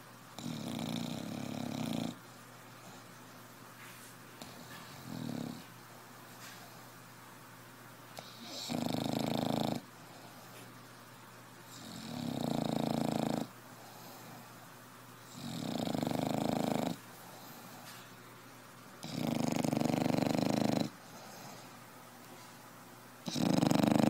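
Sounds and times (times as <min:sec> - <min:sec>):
quiet breathing: 0:09.8 - 0:10.9, 0:13.4 - 0:15.4, 0:16.1 - 0:18.2, 0:19.1 - 0:22.8
person snoring: 0:19.0 - 0:20.9, 0:23.3 - 0:24.0.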